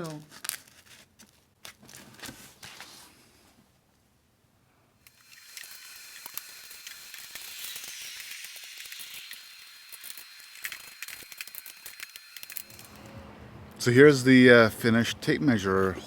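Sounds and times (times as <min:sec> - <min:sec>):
aerosol can spraying hiss: 0:05.3 - 0:12.8.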